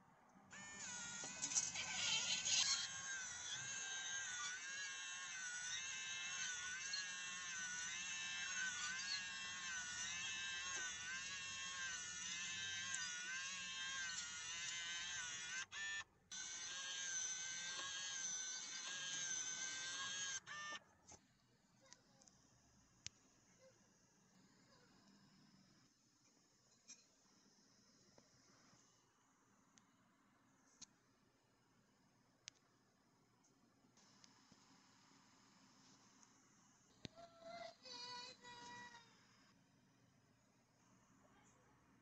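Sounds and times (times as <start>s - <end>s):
motor whining: 0.5s - 20.8s.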